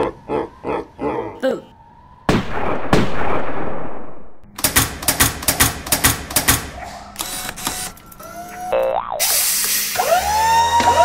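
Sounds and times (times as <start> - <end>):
loud blast: 2.3 - 4.4
sharp mechanical clacks: 4.5 - 8.0.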